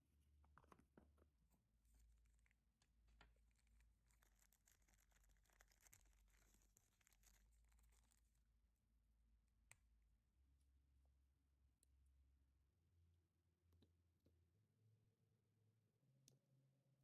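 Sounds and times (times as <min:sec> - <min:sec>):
faint crackling and ticks: 0:00.3 - 0:08.5.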